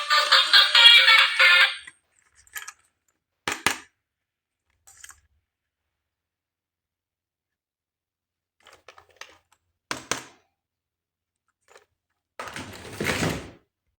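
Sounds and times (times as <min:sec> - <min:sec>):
plastic toys clicking: 0:02.2 - 0:02.9, 0:04.8 - 0:05.3.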